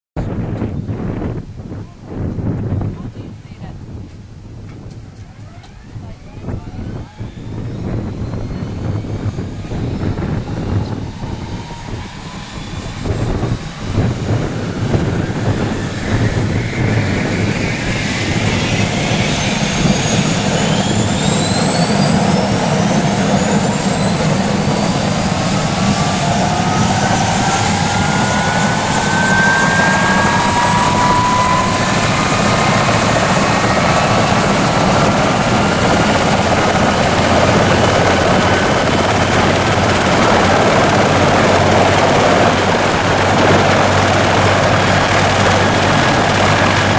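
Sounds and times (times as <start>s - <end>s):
helicopter engines whining: 0.3s - 46.9s.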